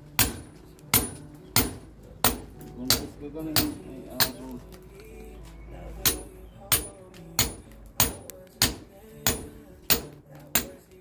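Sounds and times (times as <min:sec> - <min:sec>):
hammer knocking paving blocks: 0:00.2 - 0:04.5.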